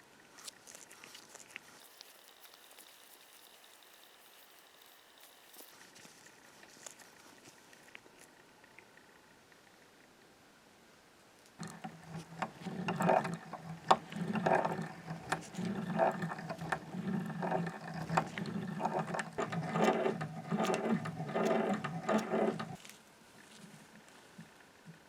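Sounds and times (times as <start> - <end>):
hand-cranked machine whirring: 11.6 - 22.8.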